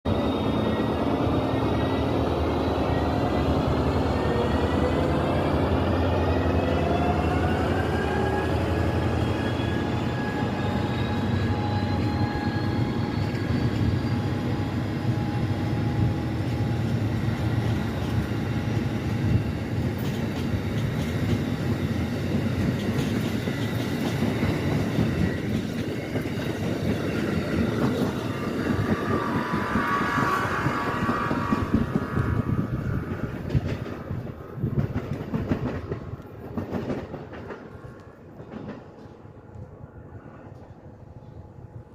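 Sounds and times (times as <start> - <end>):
train rumbling and clattering: 0.1 - 41.9
whining tones rising in pitch: 27.0 - 33.4.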